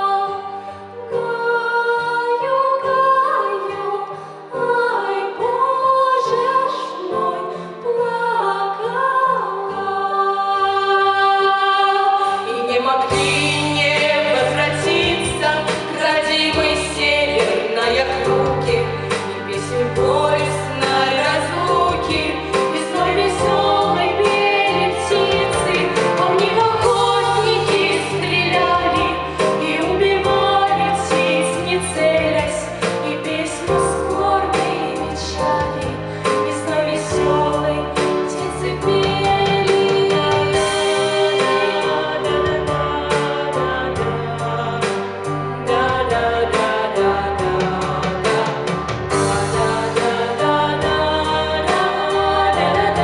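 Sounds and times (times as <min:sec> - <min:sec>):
women singing folk song: 0:00.0 - 0:53.0
instrumental backing with beat: 0:13.1 - 0:53.0.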